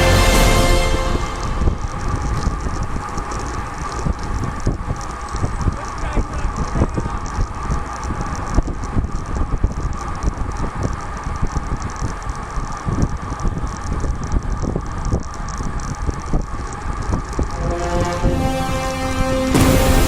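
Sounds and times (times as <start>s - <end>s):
wind buffeting microphone: 1.4s - 18.5s
bicycle rattling and knocking: 1.7s - 17.6s.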